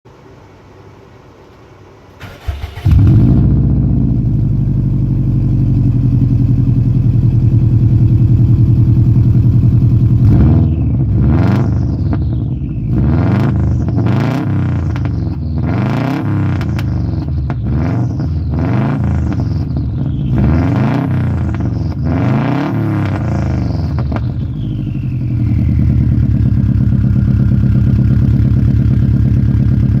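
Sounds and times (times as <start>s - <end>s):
car engine starting: 2.1s - 30.0s
car engine revving: 2.2s - 6.2s, 7.6s - 28.2s
car engine idling: 2.2s - 30.0s.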